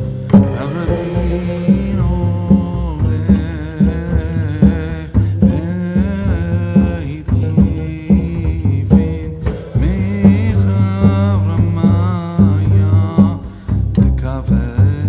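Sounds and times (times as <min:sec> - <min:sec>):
sliding curving melody: 0:00.0 - 0:05.7
background music with drum beat: 0:00.0 - 0:15.0
bass line: 0:00.0 - 0:15.0.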